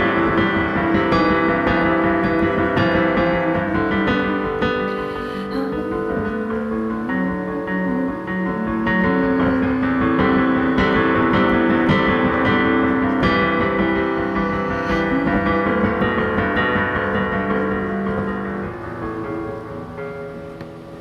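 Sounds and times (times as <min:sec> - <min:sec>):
keyboard chords: 0:00.0 - 0:21.0
instrumental rock music: 0:06.3 - 0:21.0.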